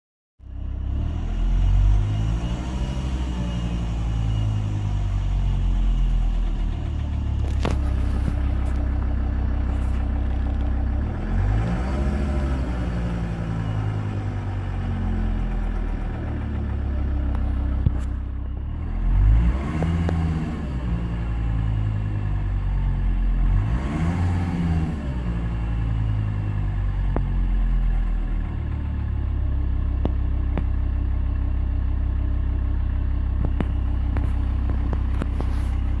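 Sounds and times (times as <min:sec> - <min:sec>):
diesel engine revving: 0:00.5 - 0:36.0.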